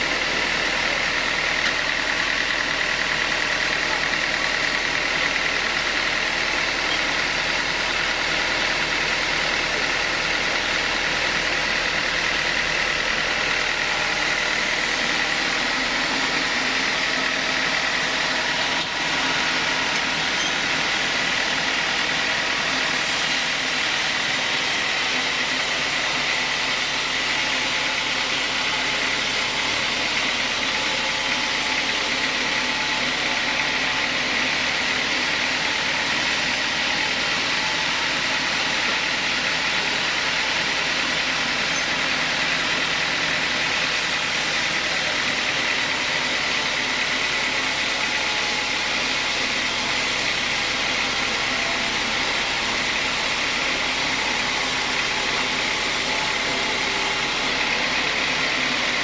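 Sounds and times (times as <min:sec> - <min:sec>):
sawmill saw running: 0:00.0 - 0:59.0
high-pitched saw whine: 0:18.4 - 0:27.6.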